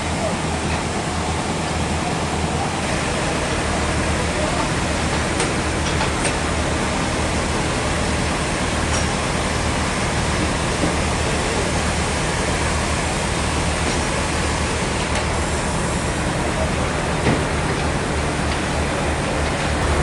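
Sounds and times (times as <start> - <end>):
sawmill machinery running: 0.0 - 20.0
constant low hum: 19.8 - 20.0.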